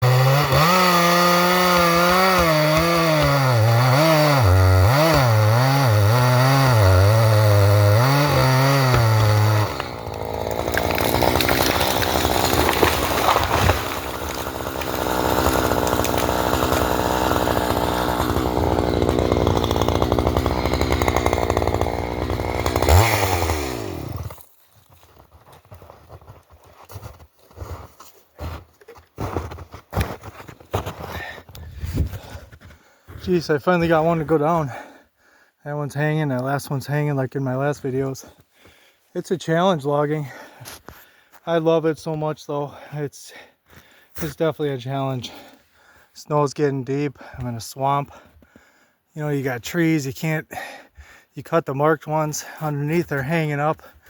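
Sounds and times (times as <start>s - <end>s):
chainsaw revving: 0.0s - 24.4s.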